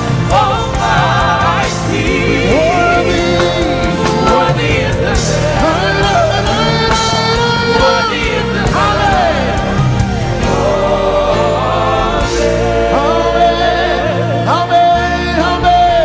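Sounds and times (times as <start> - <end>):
band chords and bass: 0.0 - 16.0
person singing gospel: 0.0 - 16.0.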